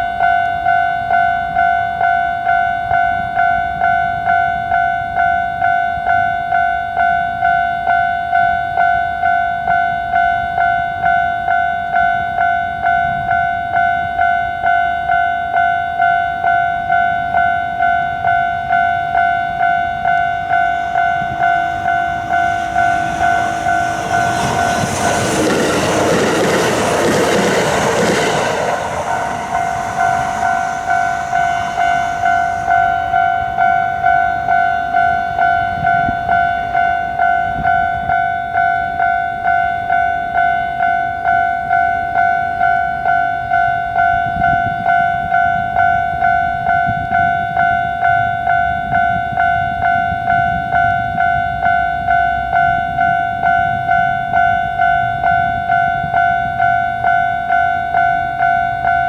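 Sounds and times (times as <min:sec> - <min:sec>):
level-crossing warning bell: 0:00.0 - 0:59.0
train passing: 0:12.8 - 0:59.0.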